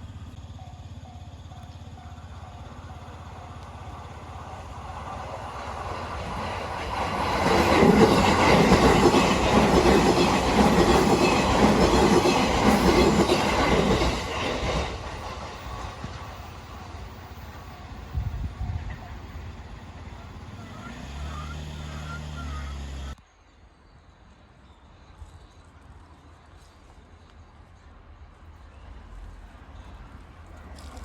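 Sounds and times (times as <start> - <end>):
crossing bell ringing: 0.5 - 4.9
train wheels clattering on rails: 0.8 - 21.5.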